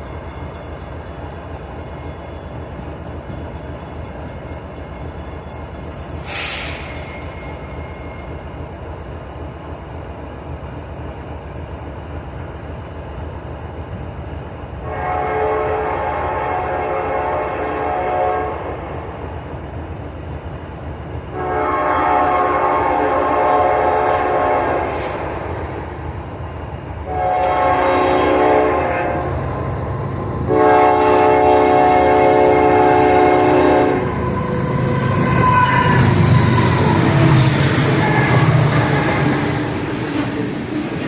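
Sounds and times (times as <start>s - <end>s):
train rumble: 0.0s - 41.0s
locomotive air horn: 14.8s - 18.8s, 21.3s - 25.3s, 27.0s - 29.4s, 30.5s - 39.7s.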